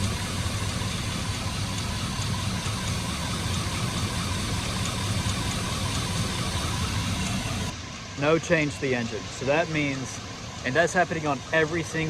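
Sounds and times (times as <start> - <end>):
engine idling with misfire: 0.0 - 12.0.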